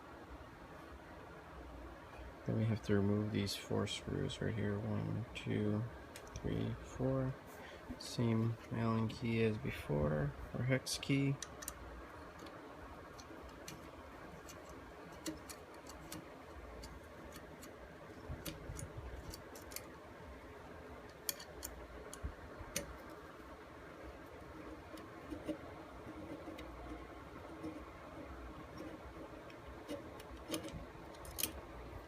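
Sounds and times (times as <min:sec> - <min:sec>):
hex key clicking on screws: 0:11.4 - 0:20.0, 0:21.1 - 0:23.2, 0:28.6 - 0:31.7.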